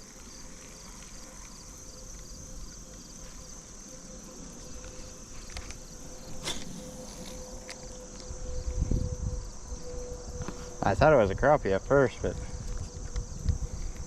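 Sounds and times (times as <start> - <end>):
insect chorus pulsing: 0.0 - 14.0.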